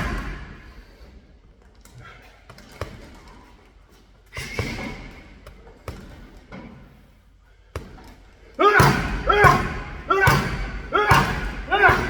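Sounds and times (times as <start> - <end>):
punches thudding into punch bag: 8.6 - 12.0.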